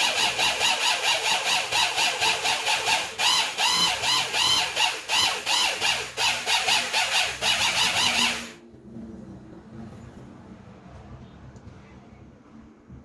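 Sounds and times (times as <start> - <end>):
rhythmic squeaking from stirring: 0.0 - 8.6.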